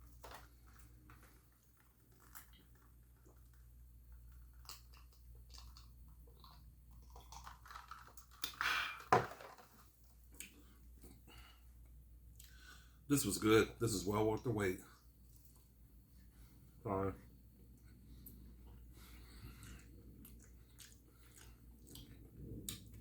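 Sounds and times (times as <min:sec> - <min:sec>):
person chewing food: 0:00.0 - 0:09.1, 0:10.2 - 0:13.0, 0:17.7 - 0:23.0.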